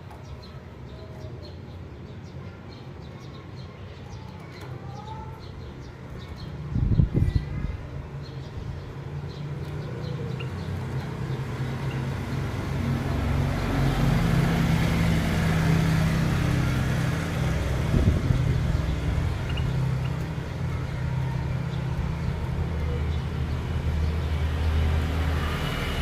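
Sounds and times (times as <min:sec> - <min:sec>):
vehicle engine running: 0:09.5 - 0:26.0.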